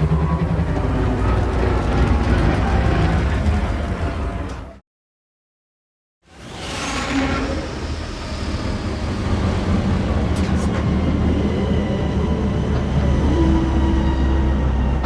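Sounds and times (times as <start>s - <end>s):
low engine rumble: 0.0s - 4.8s.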